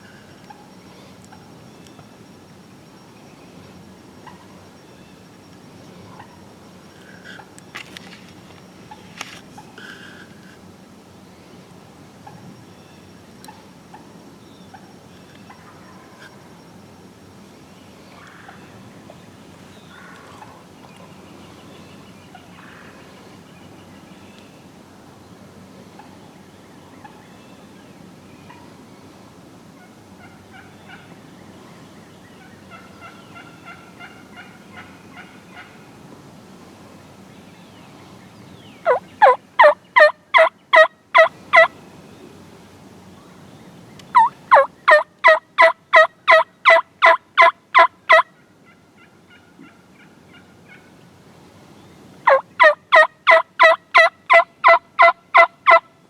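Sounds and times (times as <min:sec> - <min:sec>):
turkey yelping: 0:32.7 - 0:35.7, 0:38.9 - 0:41.7, 0:44.1 - 0:50.9, 0:52.3 - 0:55.8.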